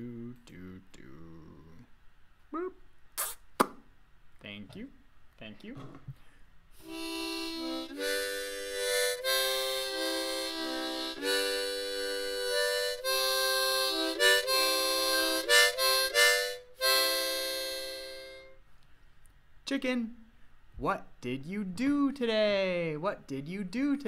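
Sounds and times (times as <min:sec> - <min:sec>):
harmonica playing chords: 0:06.8 - 0:18.6.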